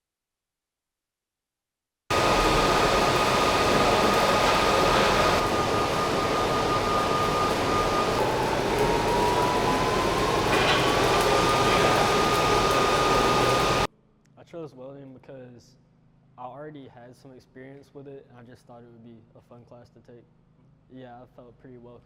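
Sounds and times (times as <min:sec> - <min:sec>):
high-pitched whine: 0:02.1 - 0:13.9
loud machine noise: 0:02.1 - 0:13.9.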